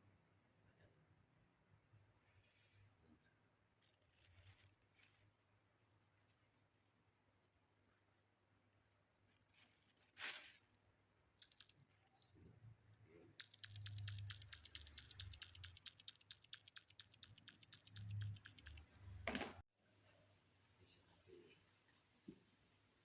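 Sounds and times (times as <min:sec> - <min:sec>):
fast light clicks: 0:13.4 - 0:19.0.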